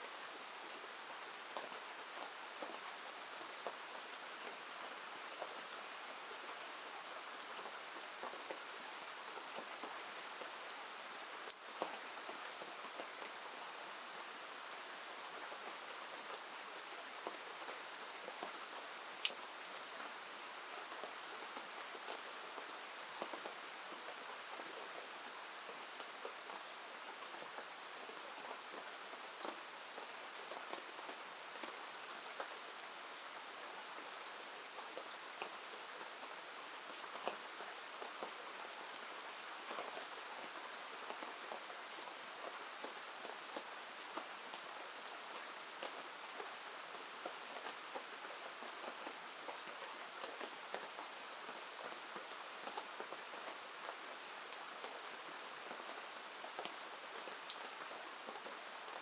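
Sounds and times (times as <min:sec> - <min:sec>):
steady rain falling: 0:00.0 - 0:59.0
rain drop ticks: 0:10.4 - 0:12.0.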